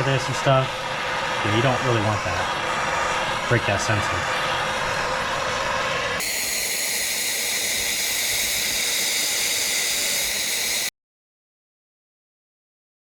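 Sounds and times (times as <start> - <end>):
loud hiss: 6.2 - 10.9.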